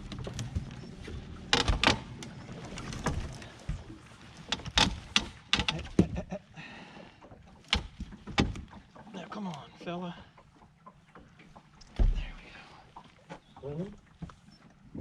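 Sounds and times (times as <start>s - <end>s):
knocks and clatter in a boat: 0.0s - 15.0s.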